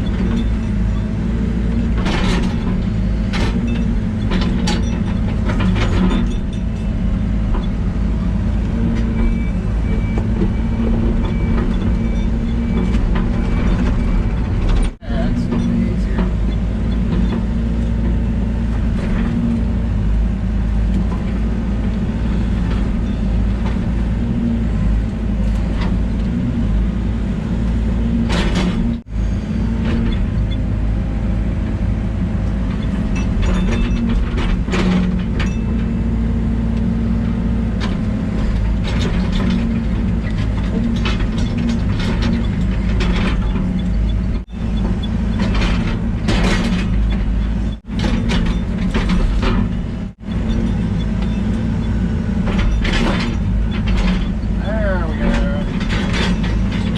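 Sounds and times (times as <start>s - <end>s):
excavator diesel engine running: 0.0s - 56.9s
clanks and scrapes of machinery: 1.7s - 8.0s, 8.6s - 20.0s, 27.6s - 30.8s, 32.4s - 56.9s.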